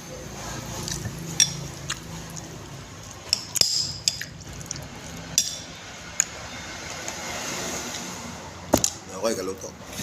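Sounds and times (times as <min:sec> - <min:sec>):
liquid sound: 0:00.5 - 0:06.2
tableware clinking: 0:01.4 - 0:01.7, 0:03.3 - 0:04.3, 0:05.4 - 0:05.8.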